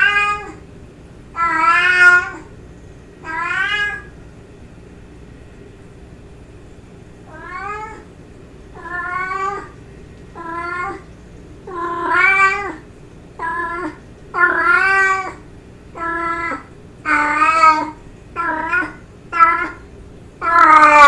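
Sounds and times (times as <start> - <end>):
cat meowing: 0.0 - 0.6, 1.4 - 2.5, 3.2 - 4.1, 7.3 - 8.1, 8.8 - 9.8, 10.4 - 11.1, 11.7 - 12.8, 13.4 - 15.4, 16.0 - 19.8, 20.4 - 21.0.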